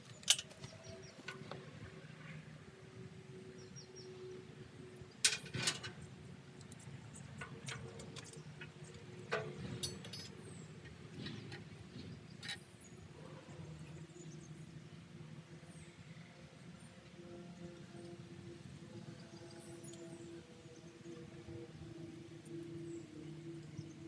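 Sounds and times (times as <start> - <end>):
clicks and knocks of parts: 5.2 - 6.0, 7.4 - 11.6.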